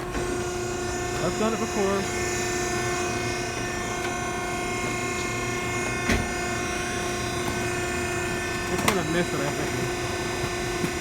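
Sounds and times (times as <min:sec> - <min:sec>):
hydraulic motor humming: 0:00.0 - 0:11.0.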